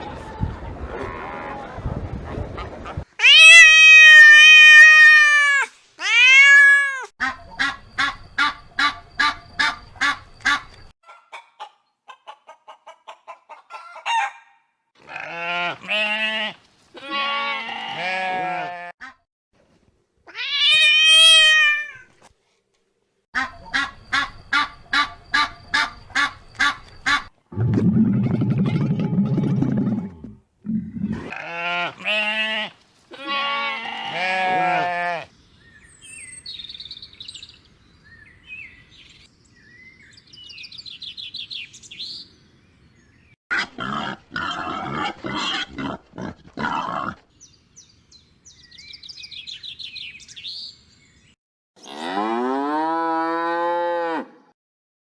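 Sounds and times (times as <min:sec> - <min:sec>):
low-pitched fowl calls: 0:07.2 - 0:14.6, 0:23.4 - 0:27.3.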